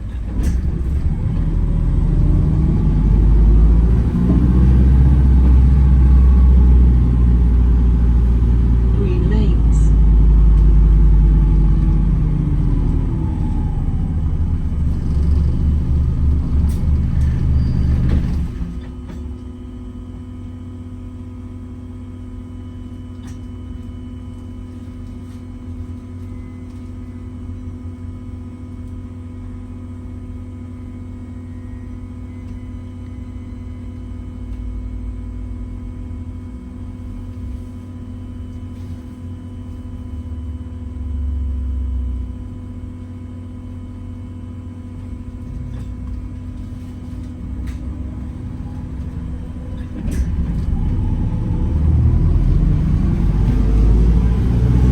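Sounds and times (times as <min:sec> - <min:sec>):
bus drive rumble and whine: 0:00.0 - 0:54.9.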